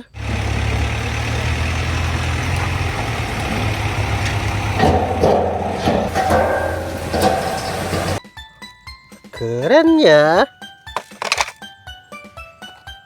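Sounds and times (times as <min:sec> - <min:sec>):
truck engine idling: 0:00.0 - 0:08.2.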